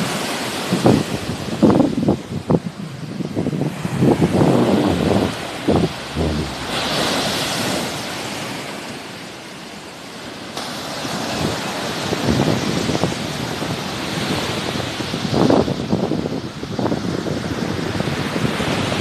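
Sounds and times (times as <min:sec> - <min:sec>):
wind buffeting microphone: 0:00.9 - 0:08.0.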